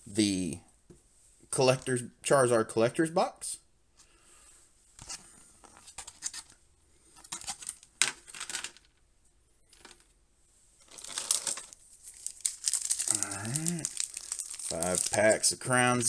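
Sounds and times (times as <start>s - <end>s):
tin and packaging handled: 5.0s - 8.9s, 10.8s - 15.5s
packaging crinkling: 10.8s - 16.0s.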